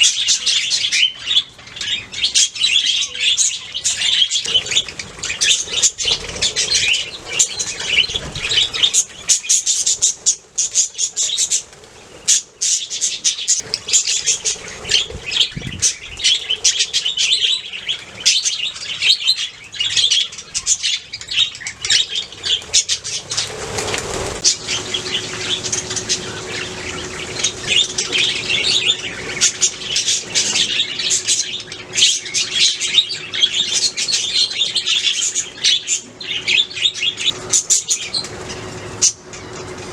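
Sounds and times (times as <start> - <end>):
budgerigars chirping: 0.0 - 39.9
faint steady hum: 0.0 - 39.9
rustling whoosh: 22.7 - 27.6.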